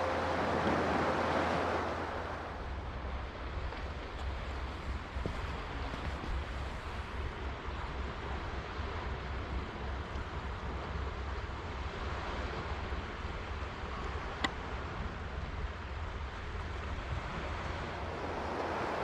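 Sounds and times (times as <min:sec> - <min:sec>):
sea surf washing on shore: 0:00.0 - 0:02.8, 0:17.2 - 0:19.0
wind rumbling on microphone: 0:00.0 - 0:11.0, 0:16.3 - 0:19.0.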